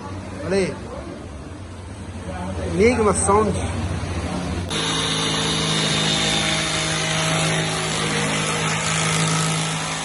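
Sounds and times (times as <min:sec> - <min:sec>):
power tool cutting wood: 0:04.7 - 0:10.0.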